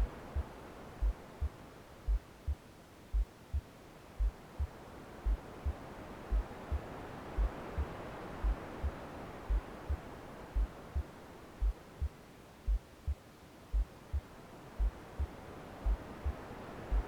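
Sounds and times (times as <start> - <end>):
white noise hiss: 0.0 - 17.0
heartbeat double thump: 2.1 - 2.3, 3.1 - 4.7, 5.3 - 6.8, 7.4 - 10.0, 12.7 - 17.0.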